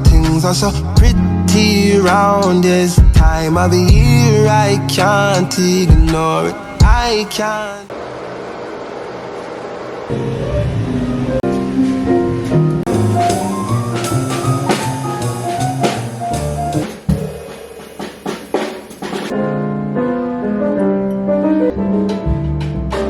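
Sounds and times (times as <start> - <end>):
drum kit beat: 0.0 - 7.2, 11.4 - 19.4
piano: 0.0 - 8.0, 10.0 - 23.0.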